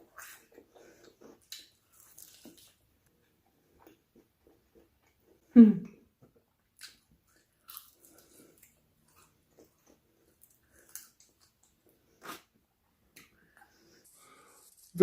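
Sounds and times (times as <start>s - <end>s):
person chewing and crunching: 0.0s - 2.9s, 6.6s - 12.5s.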